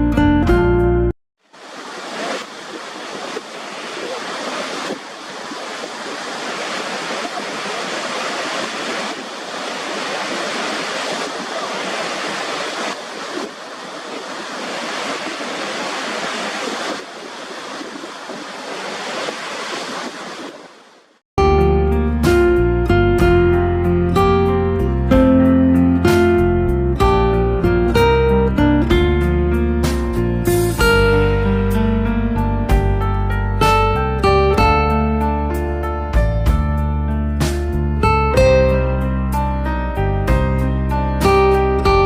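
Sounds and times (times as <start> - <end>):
rushing water: 1.4 - 21.2.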